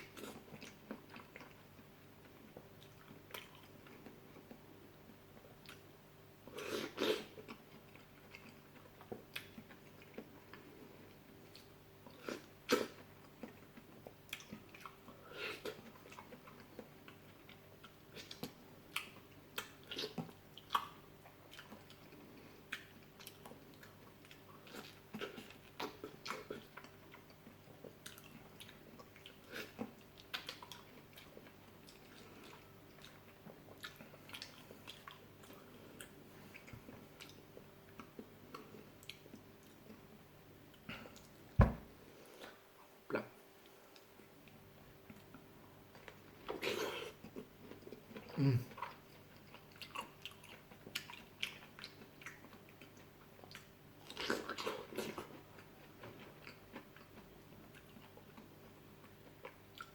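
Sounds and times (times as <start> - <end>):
faint steady hum: 0.0 - 59.9
chewing and biting fruit: 11.4 - 40.0, 44.5 - 59.9.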